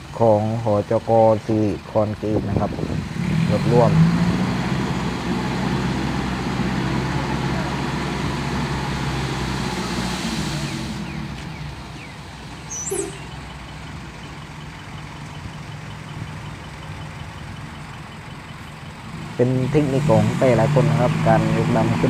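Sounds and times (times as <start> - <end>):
heavy diesel engine running: 0.0 - 22.0
brief squeal: 12.6 - 13.6.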